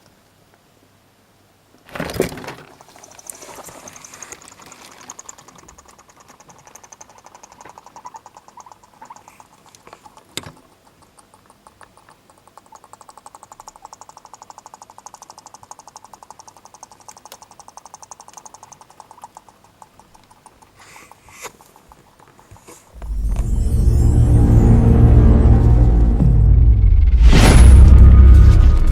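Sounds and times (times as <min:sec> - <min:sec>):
guinea pig chattering teeth: 0:02.8 - 0:23.0.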